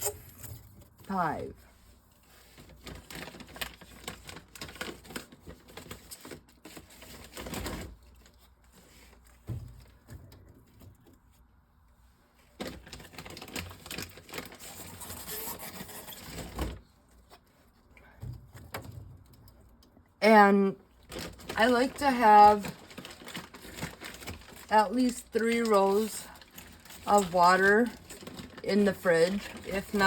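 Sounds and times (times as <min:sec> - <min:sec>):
plastic bottles clicking and crinkling: 0:02.6 - 0:08.4, 0:12.6 - 0:16.8, 0:21.0 - 0:30.0.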